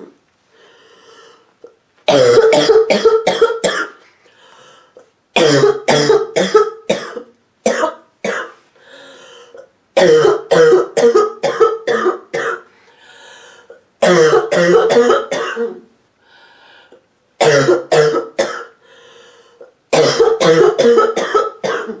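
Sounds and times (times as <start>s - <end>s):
woman breathing: 0.5s - 1.7s, 4.1s - 5.1s, 8.7s - 9.7s, 12.7s - 13.8s, 16.2s - 17.1s, 18.8s - 19.8s
woman's barking hacking cough: 2.1s - 4.0s, 5.4s - 8.5s, 10.0s - 12.7s, 14.0s - 15.8s, 17.4s - 18.8s, 20.0s - 22.0s.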